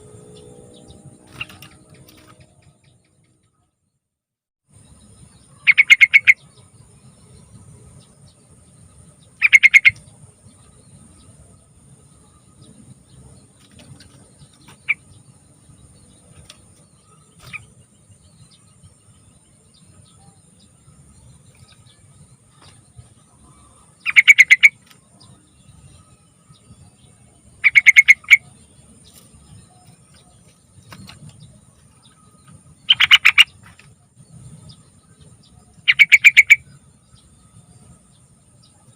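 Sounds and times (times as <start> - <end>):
bird singing bubbling phrases: 5.5 - 6.6, 9.3 - 10.1, 23.4 - 26.0, 26.8 - 28.6, 32.1 - 33.7, 34.6 - 37.3.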